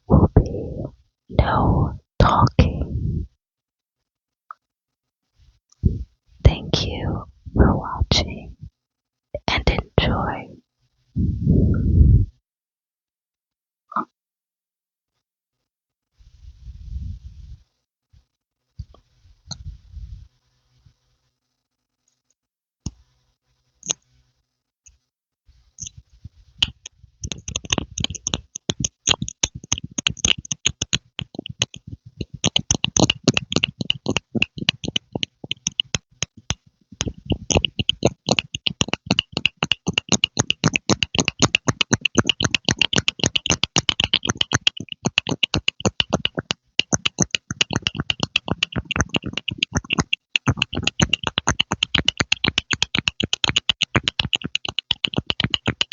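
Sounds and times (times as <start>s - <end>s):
rapid wet pops and clicks: 6.5s - 8.5s, 9.4s - 10.5s, 26.6s - 55.9s.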